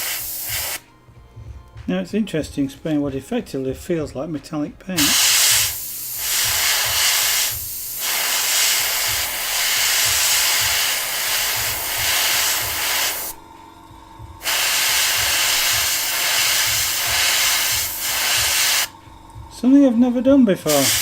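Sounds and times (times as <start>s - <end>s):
paint spray hissing: 0.0s - 0.8s, 5.0s - 13.4s, 14.4s - 18.9s, 20.7s - 21.0s.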